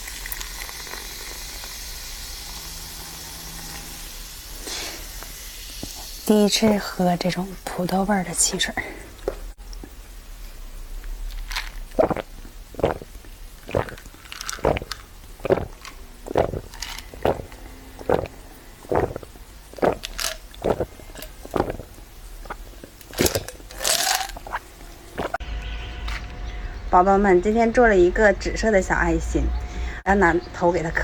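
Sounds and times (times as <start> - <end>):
person gulping soda: 4.6 - 7.0, 8.9 - 10.1, 11.0 - 25.4.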